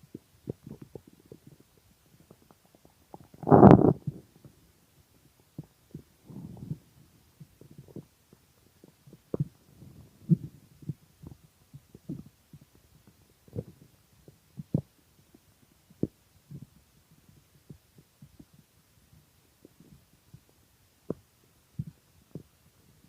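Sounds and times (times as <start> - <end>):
stomach growling: 0.4 - 4.5, 5.6 - 8.1, 13.4 - 13.9.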